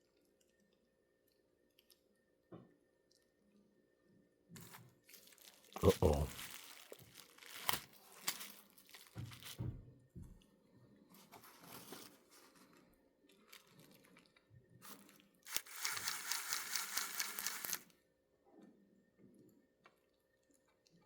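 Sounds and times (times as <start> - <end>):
model locomotive mechanism grinding: 15.5 - 17.8.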